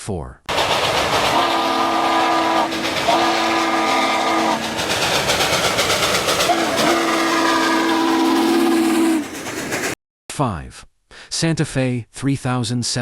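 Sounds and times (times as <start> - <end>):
steam hissing: 0.5 - 10.0
steam locomotive whistle: 1.1 - 9.4.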